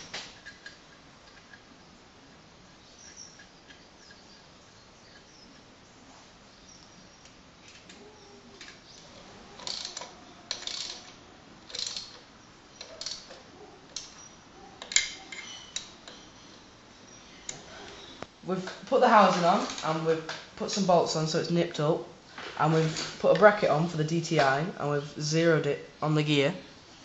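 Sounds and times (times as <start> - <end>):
metal engine parts clinking: 0.0 - 1.7, 14.8 - 16.4.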